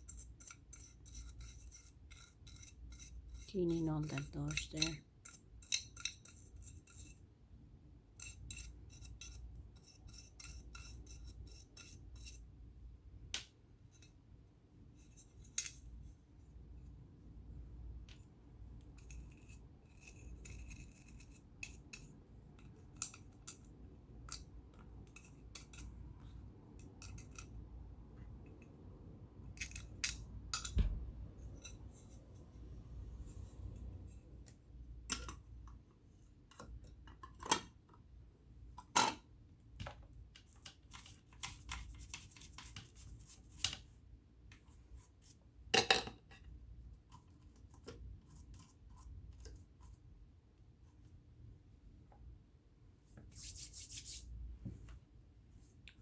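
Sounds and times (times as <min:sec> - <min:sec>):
metallic clicks of tools and parts: 0:29.6 - 0:30.8.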